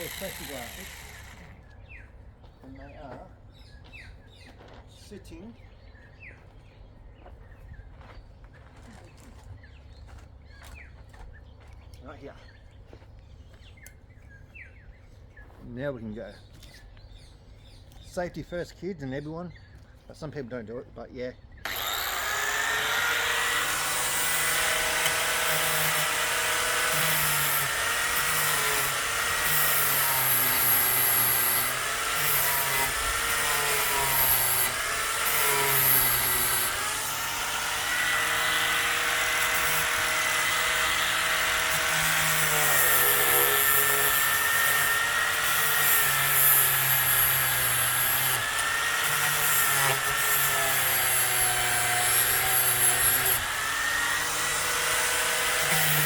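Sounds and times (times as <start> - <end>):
grinder grinding steel rod: 0.0 - 1.6, 21.7 - 56.0.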